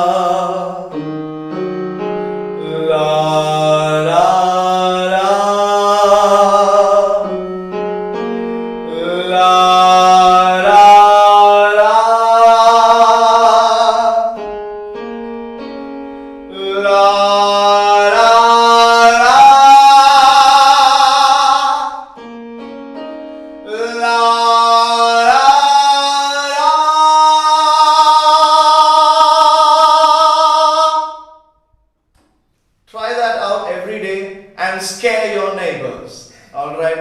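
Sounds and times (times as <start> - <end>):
man singing vocal exercise: 0.0 - 1.0, 2.6 - 7.5, 8.8 - 14.4, 16.5 - 22.2, 23.6 - 31.4, 32.9 - 37.0
keyboard notes: 0.0 - 31.4.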